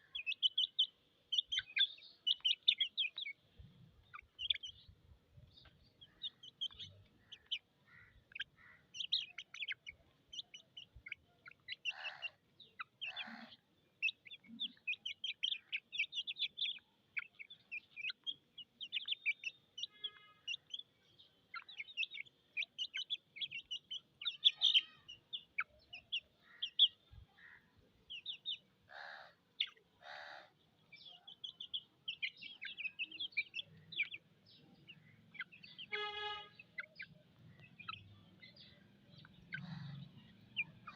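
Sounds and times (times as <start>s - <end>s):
chicks peeping: 0.0s - 40.9s
chick calling lower: 22.8s - 27.7s.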